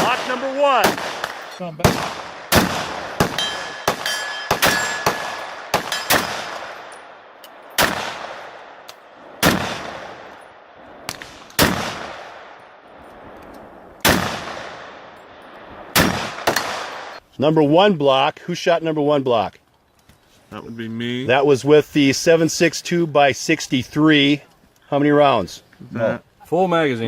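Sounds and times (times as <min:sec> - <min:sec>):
faint distant gunshots: 0:00.0 - 0:12.8, 0:14.0 - 0:17.2
rifle shots with echo: 0:00.0 - 0:12.9, 0:14.0 - 0:17.2.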